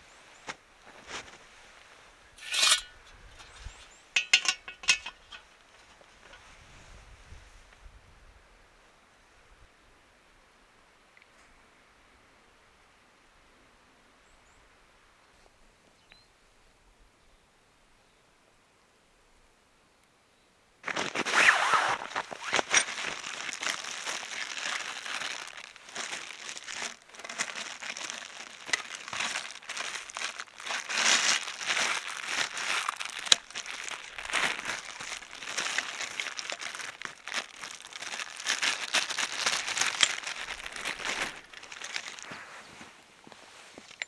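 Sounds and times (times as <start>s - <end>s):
crinkling and rustling: 0.0s - 6.6s, 20.8s - 44.0s.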